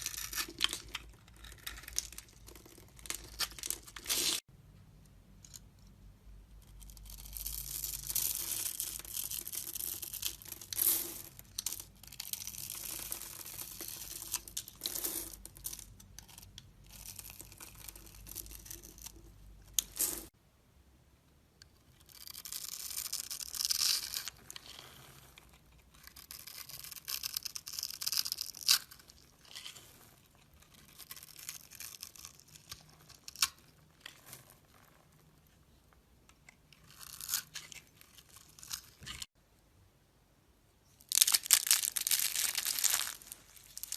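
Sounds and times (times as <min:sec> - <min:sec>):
blade scraping soap: 0:00.0 - 0:04.4, 0:22.0 - 0:34.5.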